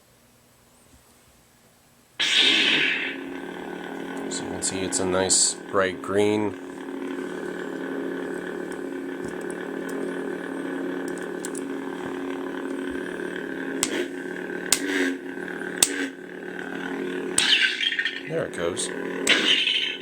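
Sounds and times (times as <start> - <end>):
lightsaber clash hits: 2.2 - 3.2, 17.4 - 18.3, 19.2 - 20.0
lightsaber electric hum: 2.2 - 20.0.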